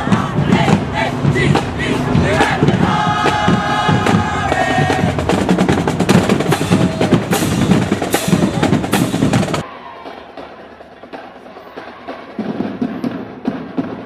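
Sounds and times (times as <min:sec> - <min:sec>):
snare and bass drums: 0:00.0 - 0:14.0.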